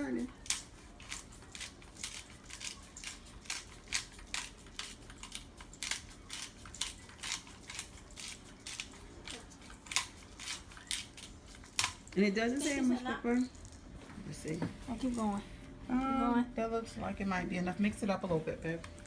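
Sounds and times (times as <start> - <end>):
pepper grinder crunching: 0.0 - 12.7.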